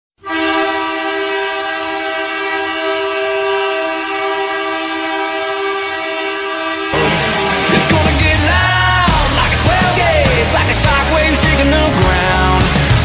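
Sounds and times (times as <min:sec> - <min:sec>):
goal horn blast: 0:00.2 - 0:10.2.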